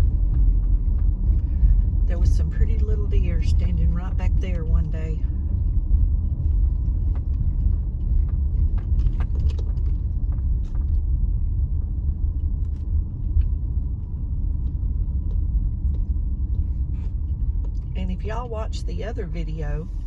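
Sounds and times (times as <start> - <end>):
car engine rumble: 0.0 - 20.0.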